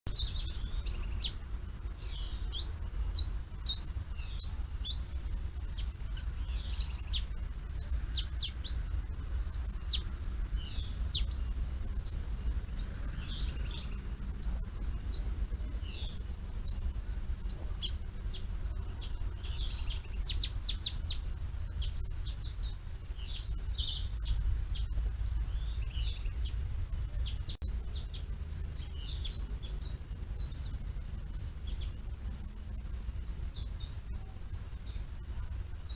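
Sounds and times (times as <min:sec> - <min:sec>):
small birds chirping: 0:00.0 - 0:35.9
steady low rumble: 0:00.1 - 0:35.9.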